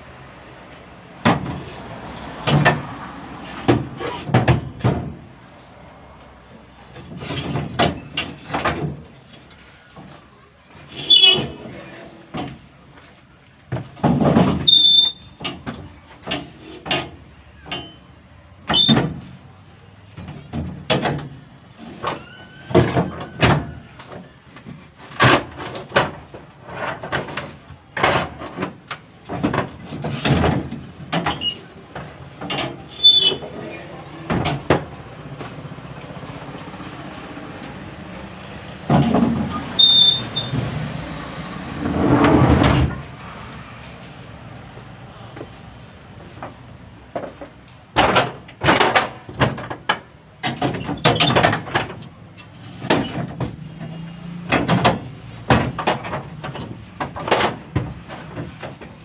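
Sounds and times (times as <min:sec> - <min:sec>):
short high squeaks: 0:11.0 - 0:11.4, 0:14.7 - 0:15.4, 0:32.9 - 0:33.4, 0:39.8 - 0:40.6
metal knocks and clanks: 0:46.2 - 0:59.0.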